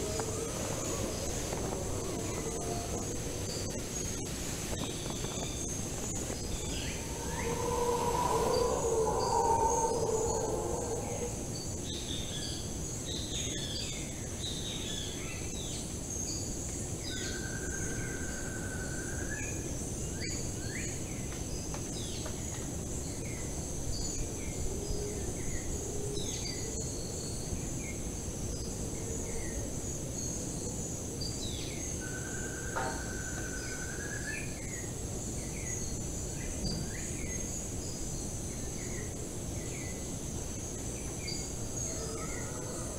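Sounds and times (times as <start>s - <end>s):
insects droning: 0.0s - 42.9s
birds chirping: 6.1s - 11.8s
long whistled bird note: 6.4s - 12.0s.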